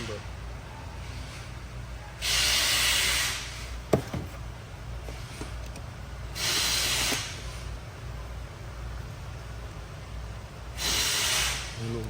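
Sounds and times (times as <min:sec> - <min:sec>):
steady low hum: 0:03.4 - 0:12.0
short hiss of air: 0:06.4 - 0:07.5, 0:10.8 - 0:11.8.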